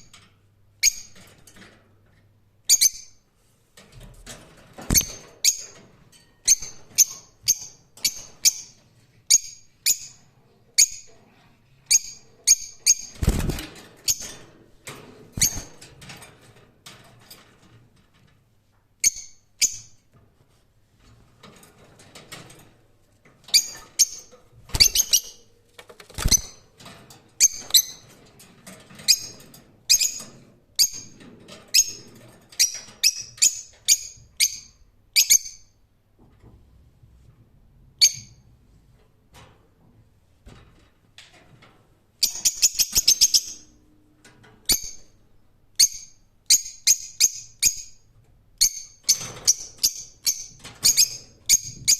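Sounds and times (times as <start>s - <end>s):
lovebirds chirping: 24.8s - 25.5s.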